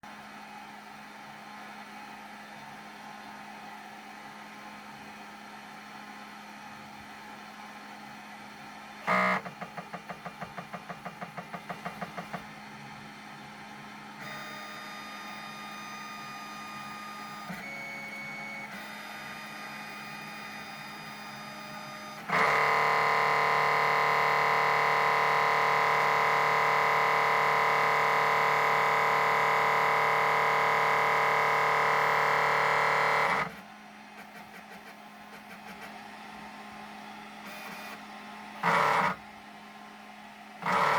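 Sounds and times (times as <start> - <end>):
machine motor stuttering pulses: 9.0 - 12.6, 18.6 - 33.6, 37.4 - 39.3, 40.6 - 40.9
motor whine: 14.1 - 33.6, 37.2 - 39.4, 40.6 - 40.9
loud grinding buzz: 22.3 - 33.4, 40.6 - 40.9.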